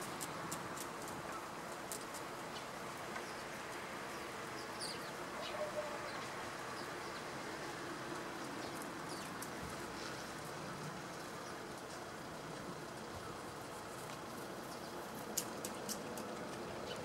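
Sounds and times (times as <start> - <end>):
faint sparrow chirps: 4.5 - 7.3.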